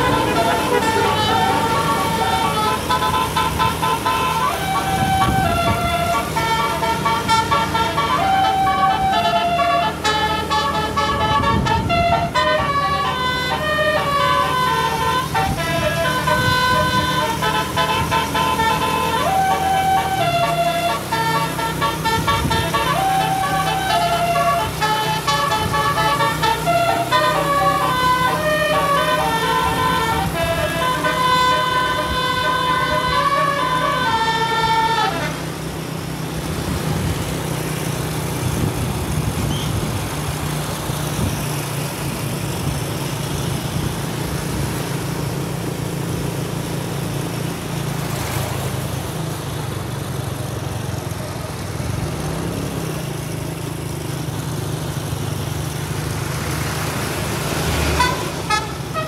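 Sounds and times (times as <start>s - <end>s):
multi-tone bus horn melody: 0.0s - 40.0s, 57.0s - 59.0s
engine and road rumble: 0.0s - 59.0s.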